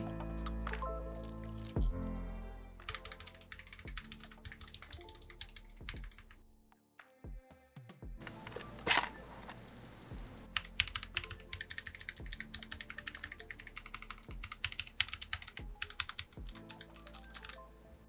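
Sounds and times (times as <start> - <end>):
mechanical keypad typing clicks: 8.3 - 17.6.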